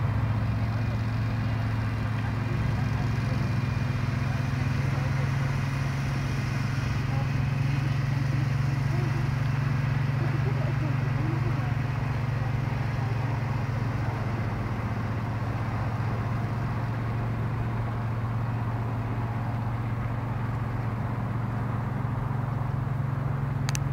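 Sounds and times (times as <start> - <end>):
lawn mower motor droning: 0.0 - 23.9.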